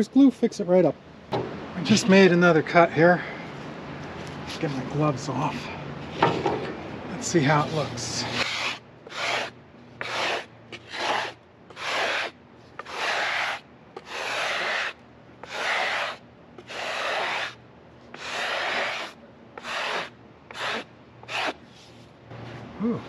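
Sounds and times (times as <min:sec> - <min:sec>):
brush sweeping sawdust off log: 0:07.5 - 0:22.0.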